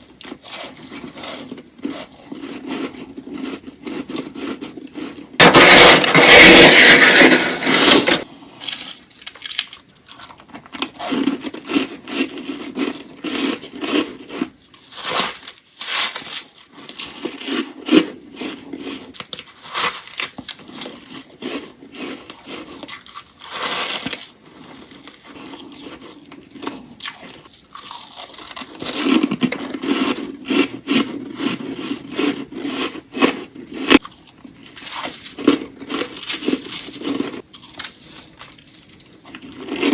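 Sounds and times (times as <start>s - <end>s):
frost scraping: 5.4s - 8.9s.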